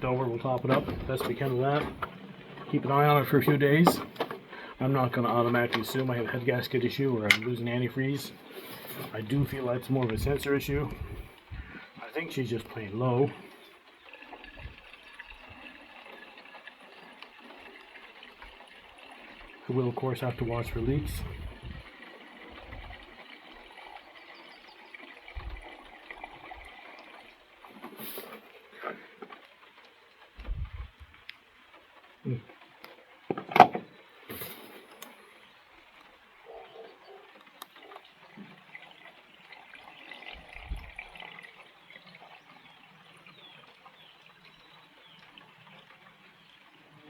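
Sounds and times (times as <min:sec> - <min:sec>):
low bumps: 0:00.0 - 0:13.6, 0:19.4 - 0:23.1, 0:30.4 - 0:31.4
liquid trickling into radiator: 0:00.0 - 0:47.0.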